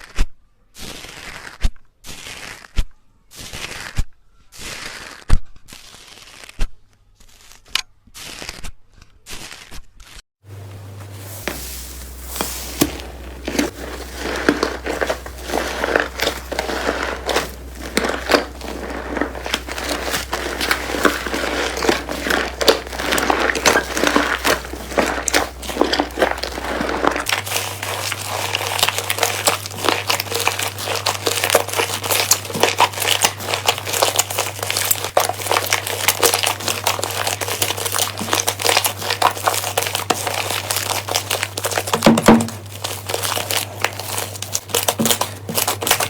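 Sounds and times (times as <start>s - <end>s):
slime squelching and crackling: 10.5s - 46.0s.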